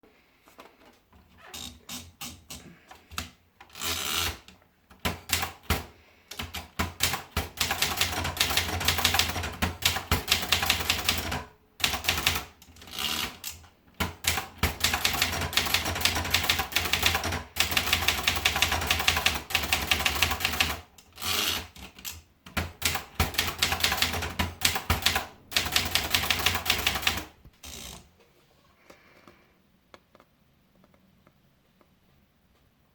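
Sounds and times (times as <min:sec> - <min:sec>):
typewriter typing: 0:01.8 - 0:28.1.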